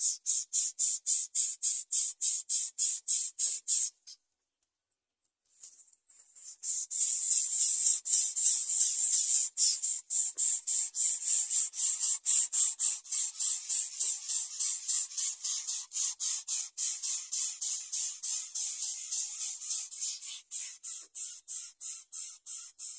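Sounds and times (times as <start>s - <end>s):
nestlings hissing begging calls: 6.6s - 22.9s.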